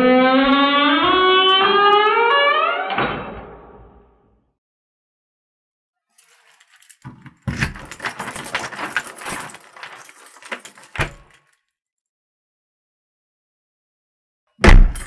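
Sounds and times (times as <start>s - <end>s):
door rattling and clattering: 6.2s - 11.4s
door thud: 11.0s - 11.3s, 14.6s - 15.0s.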